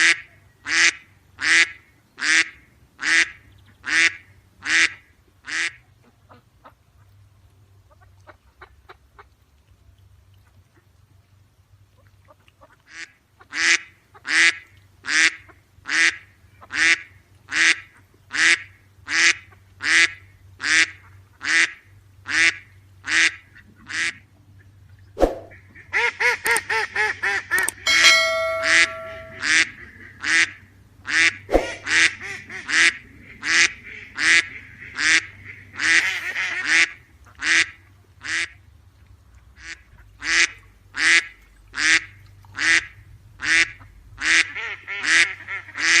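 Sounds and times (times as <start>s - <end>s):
sharp clicks: 27.5s - 27.8s
short ringing tone: 27.6s - 29.6s.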